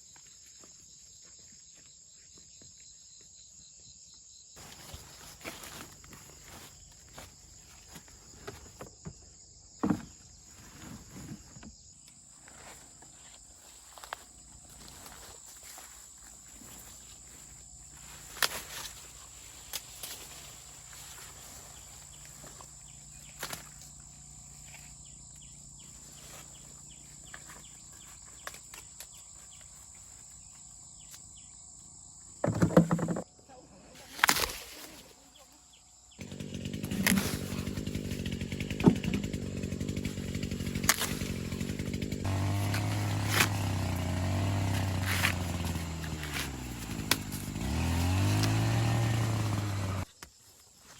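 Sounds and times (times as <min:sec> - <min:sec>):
faint high insect-like tone: 0:00.0 - 0:32.4, 0:33.2 - 0:36.2
small engine running: 0:04.6 - 0:08.9, 0:13.8 - 0:28.9, 0:36.1 - 0:50.1.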